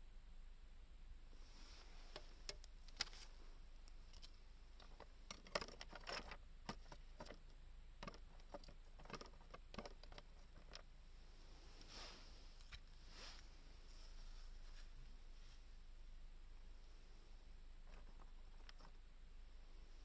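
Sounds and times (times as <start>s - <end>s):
low steady hum: 0.0s - 20.0s
small objects clicking and tapping: 2.1s - 10.9s.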